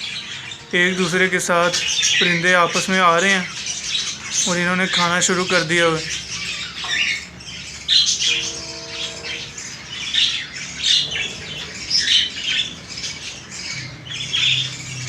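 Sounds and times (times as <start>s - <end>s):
budgerigars squawking and chirping: 0.0s - 15.0s.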